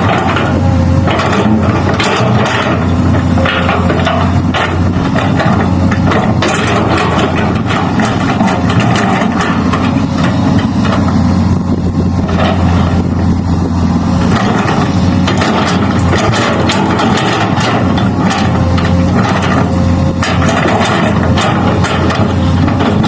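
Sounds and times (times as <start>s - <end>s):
excavator diesel engine running: 0.0s - 23.0s
machine knocks and clanks: 0.0s - 23.0s.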